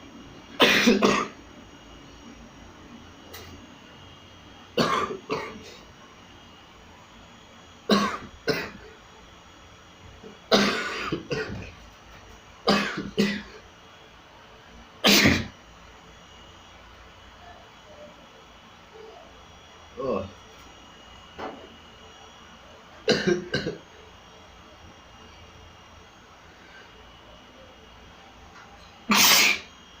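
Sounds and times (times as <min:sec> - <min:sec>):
person sneezing: 0:00.6 - 0:01.4, 0:15.0 - 0:15.5, 0:29.1 - 0:29.7.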